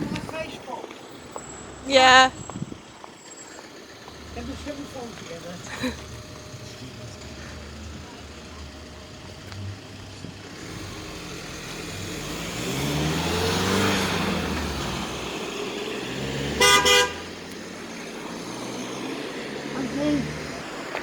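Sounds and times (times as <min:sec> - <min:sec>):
car driving past: 0:01.0 - 0:21.0
car horn toots: 0:16.4 - 0:17.4.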